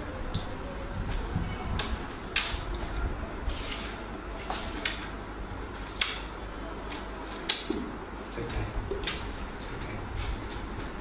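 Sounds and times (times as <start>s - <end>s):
low room rumble: 0.0s - 11.0s.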